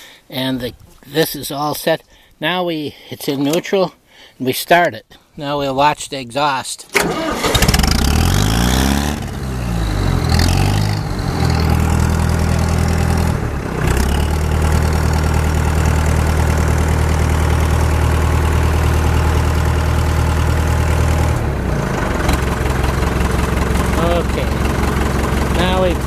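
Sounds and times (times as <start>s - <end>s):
tractor diesel engine idling: 7.0s - 26.0s.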